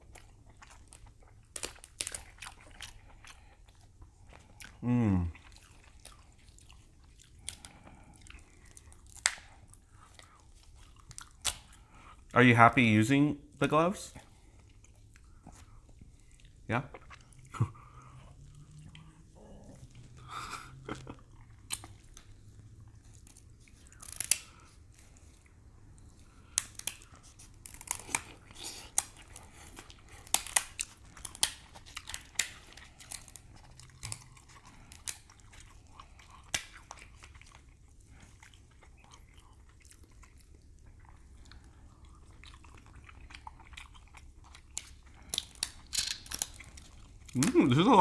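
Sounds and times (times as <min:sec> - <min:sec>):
wet chewing: 0:00.0 - 0:12.4, 0:14.0 - 0:48.0
crab shell cracking: 0:01.4 - 0:02.4, 0:08.8 - 0:09.6, 0:11.1 - 0:11.7, 0:23.2 - 0:24.6, 0:26.4 - 0:37.4, 0:44.6 - 0:47.5.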